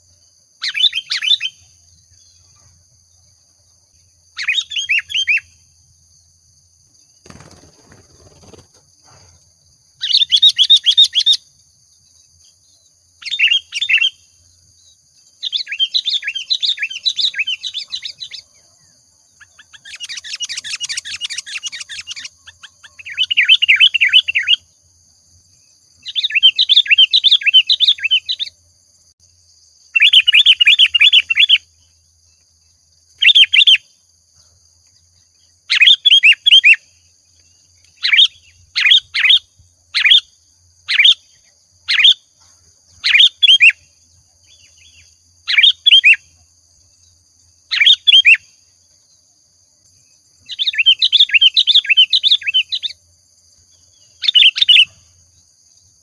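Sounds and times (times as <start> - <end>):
bird singing chattering phrases: 19.4 - 24.6.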